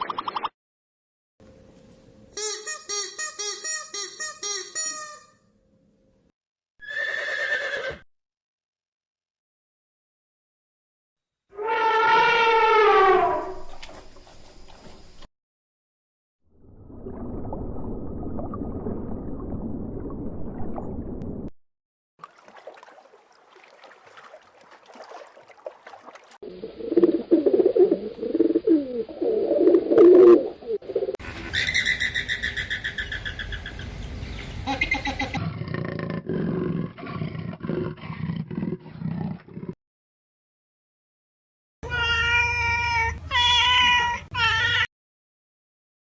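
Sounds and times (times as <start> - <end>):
low rumbling animal roar: 11.6 - 13.8
high repeated animal calls: 11.6 - 14.0.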